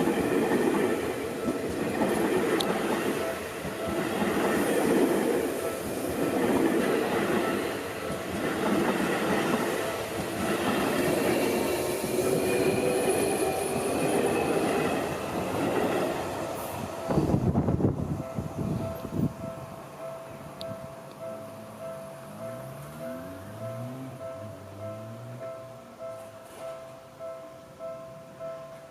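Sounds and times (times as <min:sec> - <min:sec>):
train wheels on rails: 0:00.0 - 0:21.3, 0:26.1 - 0:26.9.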